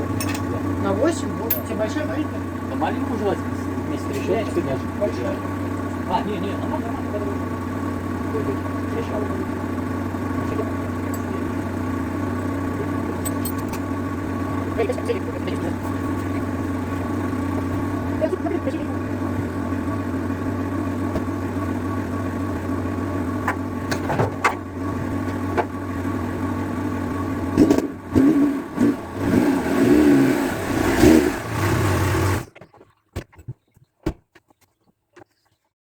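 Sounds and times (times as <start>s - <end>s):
car engine idling: 0.0s - 32.6s
valves tapping: 10.4s - 11.8s.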